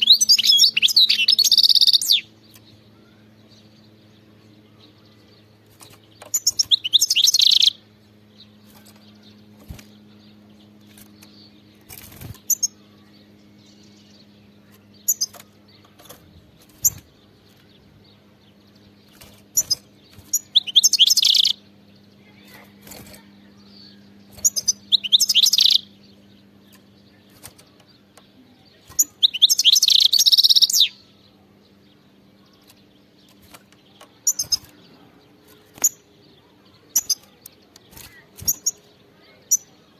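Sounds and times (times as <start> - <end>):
faint low hum: 0.0 - 39.9
finch twittering song: 0.0 - 39.9.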